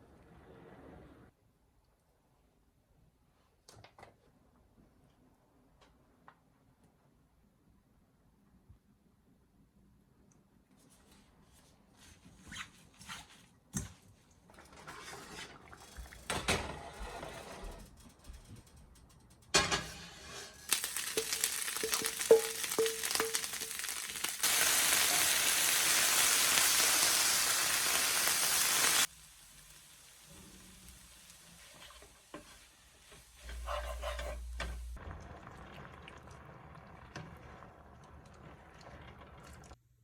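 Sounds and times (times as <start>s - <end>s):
food sizzling in a pan: 20.1s - 35.0s.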